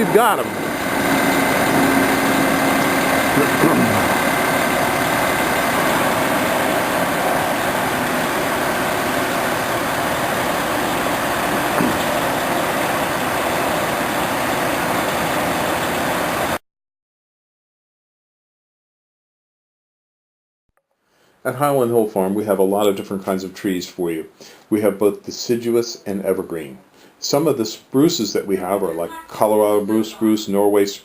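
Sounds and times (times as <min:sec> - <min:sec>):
steady tone dropping in pitch: 0:00.0 - 0:14.4
engine running: 0:00.0 - 0:16.6.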